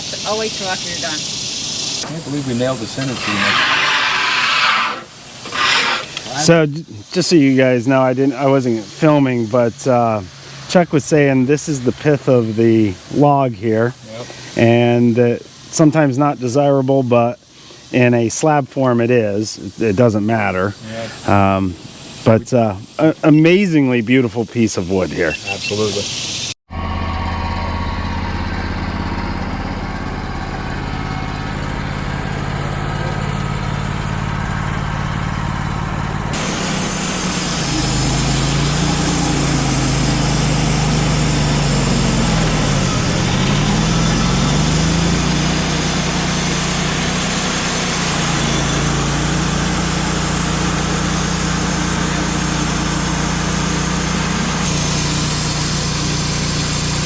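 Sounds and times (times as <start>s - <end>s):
engine running: 0.0s - 23.3s, 24.9s - 57.0s.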